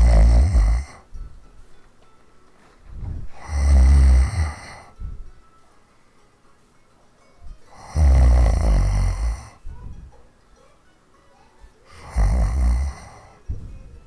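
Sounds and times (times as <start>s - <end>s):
woman snoring heavily: 0.0s - 1.1s, 3.3s - 4.9s, 7.7s - 9.6s, 11.9s - 13.4s
snort: 3.4s - 4.9s, 11.9s - 13.4s.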